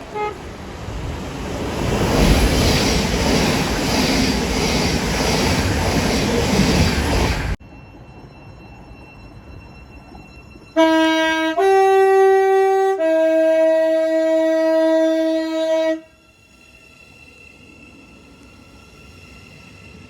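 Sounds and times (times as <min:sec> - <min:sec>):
two-tone train horn: 0:00.0 - 0:00.5, 0:10.7 - 0:16.2.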